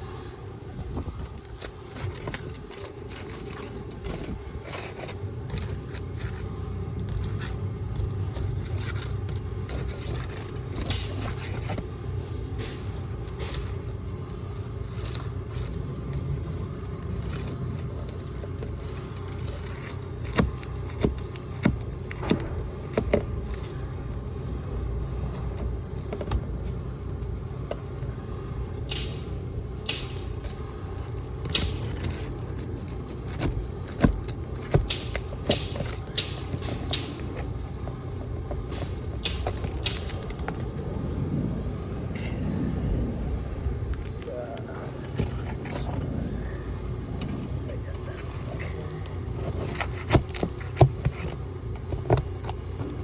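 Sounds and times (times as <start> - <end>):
steady low rumble: 0.0 - 53.0.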